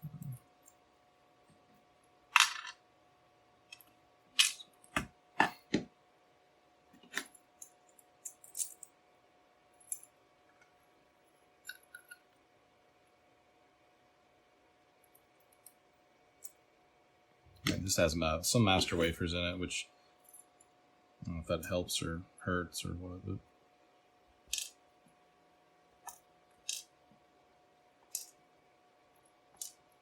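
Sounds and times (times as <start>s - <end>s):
small metal lock parts clicking: 26.7s - 26.9s, 28.1s - 28.3s.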